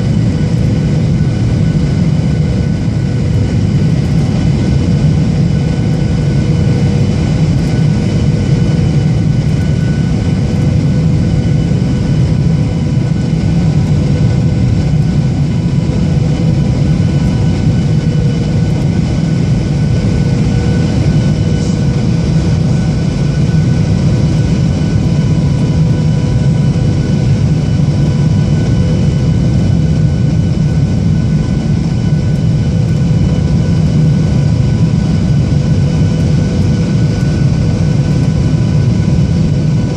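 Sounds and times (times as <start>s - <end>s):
airliner cabin engine roar: 0.0s - 39.9s
faint whining tones: 0.3s - 39.9s.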